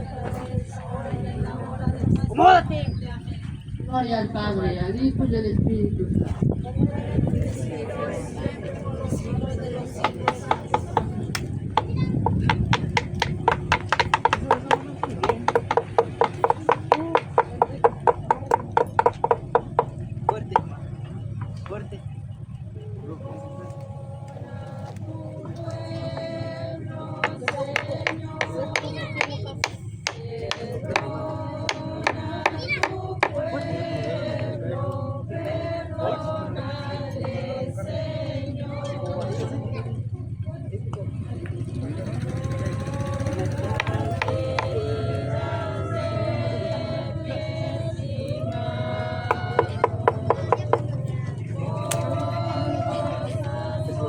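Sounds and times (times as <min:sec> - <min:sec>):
group singing a hymn: 0:00.0 - 0:05.2, 0:06.0 - 0:54.0
murmur of crowd voices: 0:00.0 - 0:54.0
rhythmic sharp knocks: 0:09.9 - 0:21.5, 0:25.2 - 0:34.6, 0:42.2 - 0:45.1, 0:48.3 - 0:51.1.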